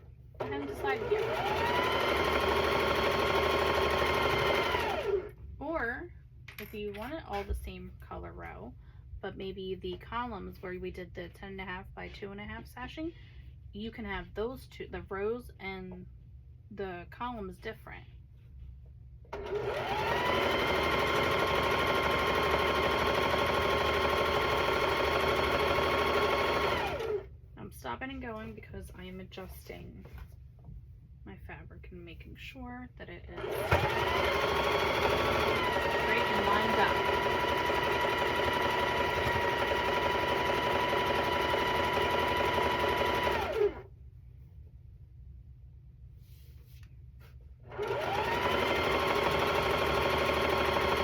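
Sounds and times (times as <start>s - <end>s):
electric sewing machine stitching: 0.4s - 5.4s, 19.3s - 27.3s, 33.4s - 43.9s, 47.7s - 51.0s.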